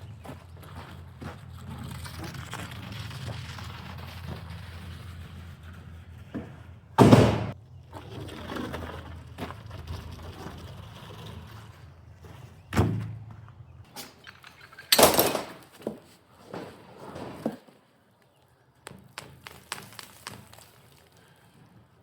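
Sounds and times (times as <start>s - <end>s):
loud thuds: 6.4s - 7.6s.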